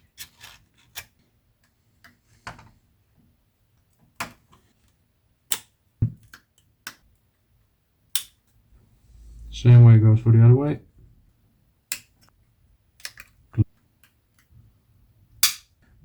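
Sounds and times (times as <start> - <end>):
small sharp plastic clicks: 8.1 - 8.4.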